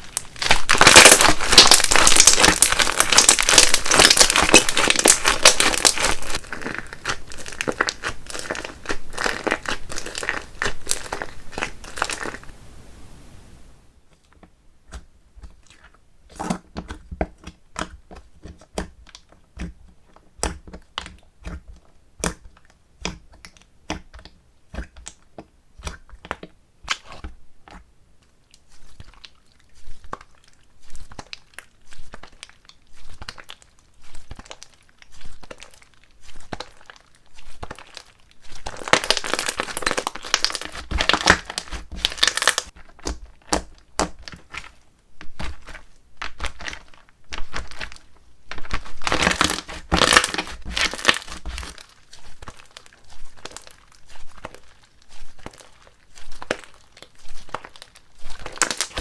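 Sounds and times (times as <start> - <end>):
dense slime crackling: 0.0 - 12.6, 28.8 - 59.0.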